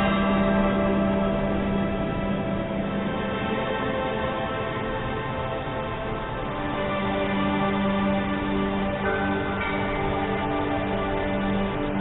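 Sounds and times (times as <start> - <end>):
ambient drone music: 0.0 - 12.0.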